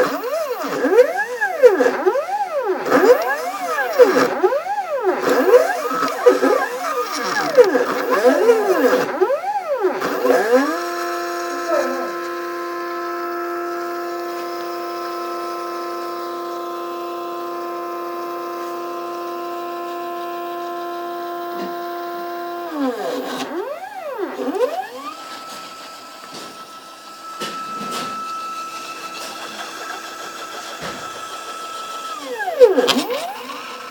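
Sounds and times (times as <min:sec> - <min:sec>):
stepper motors whining: 0:00.0 - 0:33.9.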